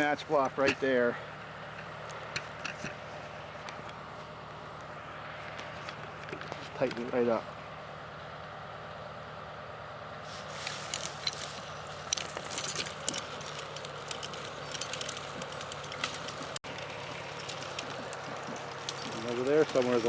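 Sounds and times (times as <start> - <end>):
tractor diesel engine running: 0.0 - 20.0
clicking and crackling rattles: 10.3 - 20.0
winch pulling in cable: 10.3 - 20.0.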